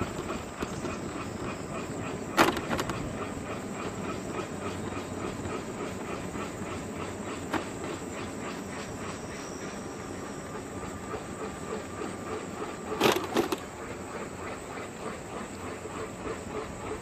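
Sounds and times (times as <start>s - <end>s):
wheels rolling on pavement: 0.0s - 8.4s, 11.9s - 14.0s.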